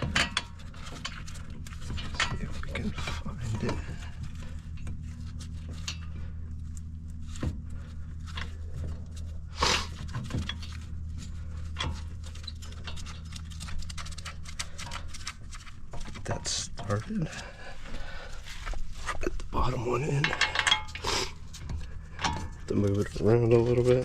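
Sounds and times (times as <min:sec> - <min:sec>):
metal clicks and rattles: 0:00.0 - 0:07.5, 0:09.9 - 0:17.4, 0:20.0 - 0:24.0
steady low hum: 0:00.0 - 0:24.0.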